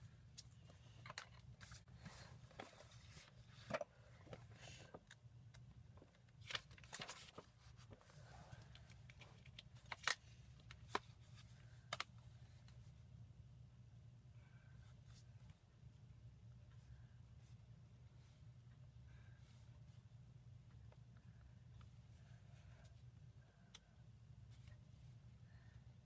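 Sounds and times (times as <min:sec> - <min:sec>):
steady low hum: 0:00.0 - 0:26.0
paper handling: 0:06.0 - 0:12.1.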